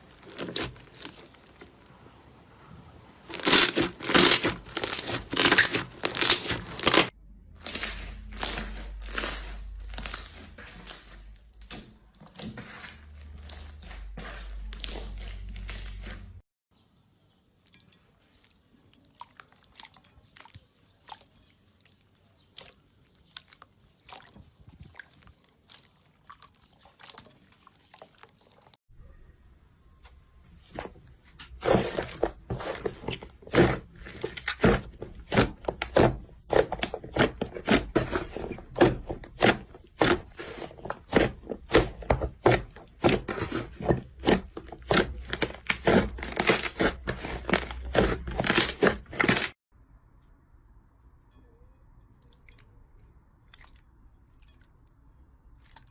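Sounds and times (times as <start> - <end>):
slime squelching: 0.0 - 16.4, 17.7 - 28.8, 30.6 - 49.6
slime crackling and popping: 3.2 - 11.2.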